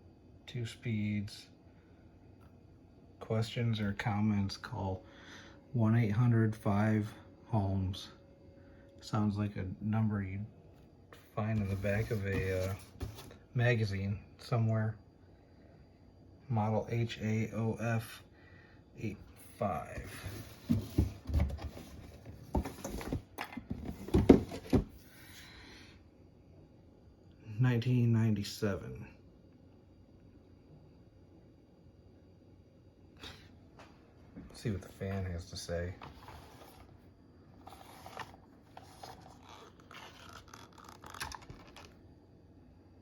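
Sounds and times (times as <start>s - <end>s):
knocks and rustles of handling: 11.2s - 13.4s, 19.8s - 25.1s, 35.9s - 42.0s.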